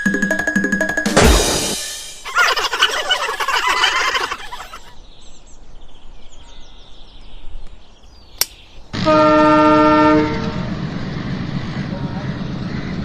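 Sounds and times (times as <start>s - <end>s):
sharp click: 8.4s - 8.6s
train horn: 9.0s - 10.8s.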